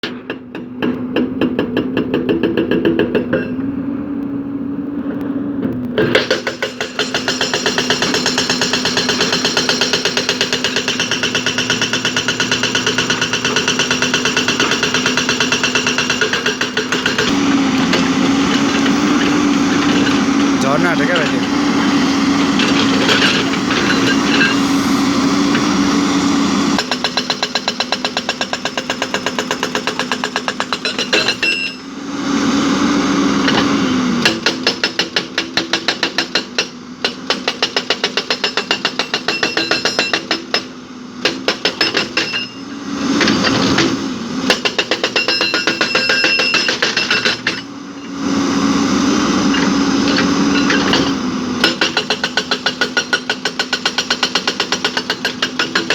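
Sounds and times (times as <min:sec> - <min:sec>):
earthmoving machine diesel engine: 0:03.2 - 0:27.7, 0:40.6 - 0:55.9.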